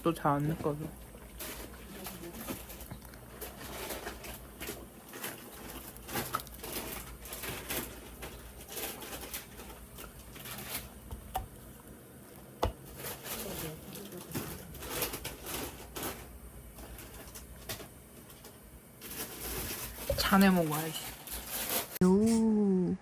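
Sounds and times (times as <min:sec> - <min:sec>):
shrimp being handled and chewed: 0:00.1 - 0:17.6.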